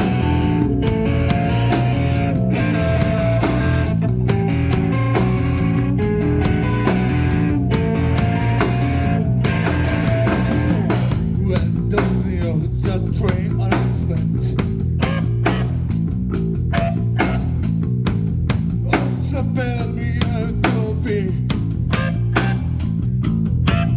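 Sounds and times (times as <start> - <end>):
guitar melody: 0.0 - 11.3
rock band playing: 0.0 - 23.9.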